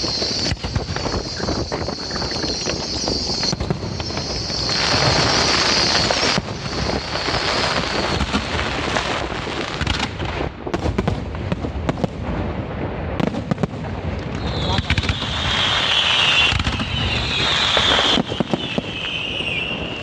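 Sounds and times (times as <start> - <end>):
bright hiss: 0.0 - 8.2
fireworks bangs and crackle: 0.0 - 20.0.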